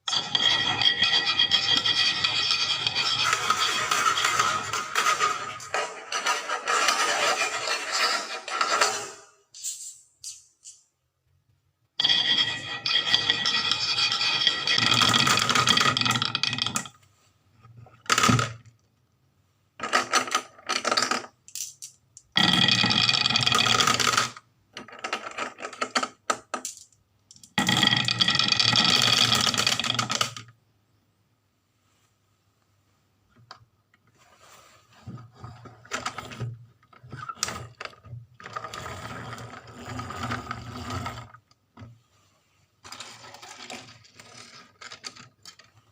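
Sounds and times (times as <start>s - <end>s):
marbles rolling and clattering: 0.1s - 9.2s, 12.0s - 17.0s, 18.0s - 18.8s, 19.8s - 30.6s, 35.2s - 41.4s, 42.8s - 45.9s.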